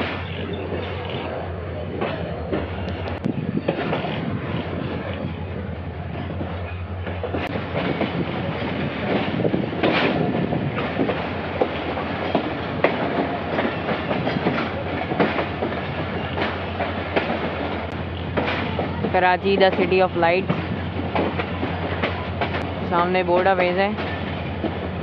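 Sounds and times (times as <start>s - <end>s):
train carriage rumble: 0.0s - 25.0s
wheels clicking on track: 6.2s - 25.0s.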